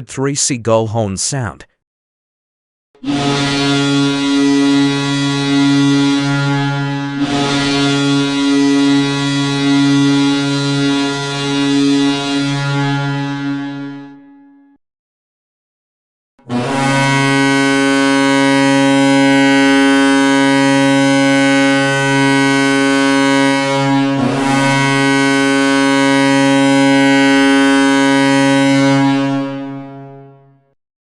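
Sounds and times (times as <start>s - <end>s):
air horn blast: 3.0s - 14.7s, 16.4s - 30.8s.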